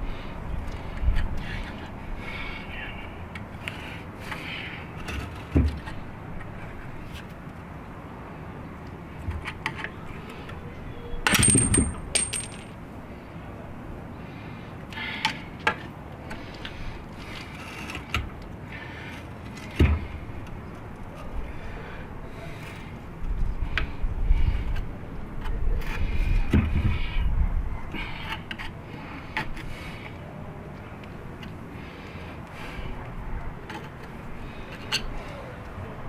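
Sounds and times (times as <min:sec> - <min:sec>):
metal tools clinking and clanking: 0:11.3 - 0:12.8.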